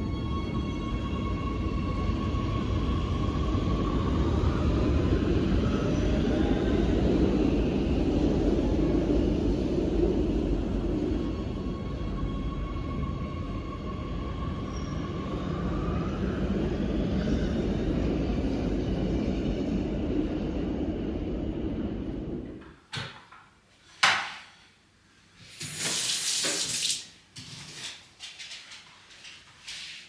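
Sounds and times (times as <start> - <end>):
tap water running: 25.5 - 27.2.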